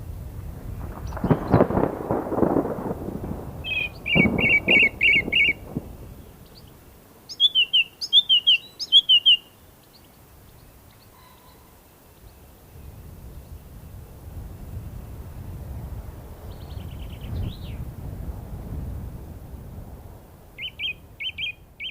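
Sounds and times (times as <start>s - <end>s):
low wind rumble: 0.0s - 21.9s
songbirds chirping: 0.6s - 18.0s, 20.0s - 21.9s
short whistled bird notes: 7.3s - 9.5s.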